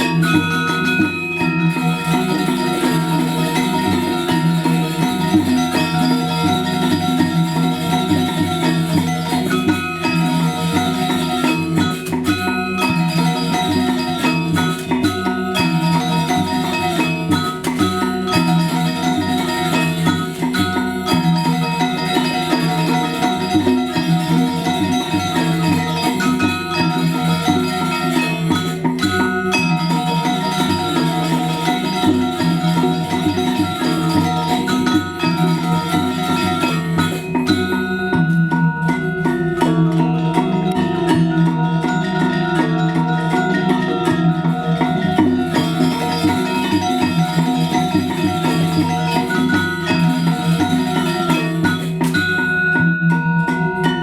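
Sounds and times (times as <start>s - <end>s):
gamelan music: 0.0s - 54.0s.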